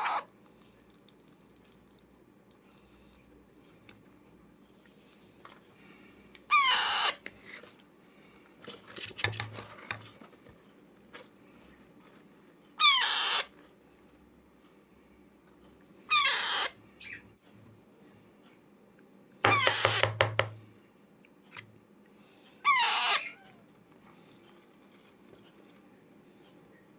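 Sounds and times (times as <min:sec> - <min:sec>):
parakeet begging calls: 0:00.0 - 0:00.3, 0:06.5 - 0:07.2, 0:12.8 - 0:13.5, 0:16.1 - 0:17.2, 0:19.5 - 0:20.0, 0:22.6 - 0:23.4.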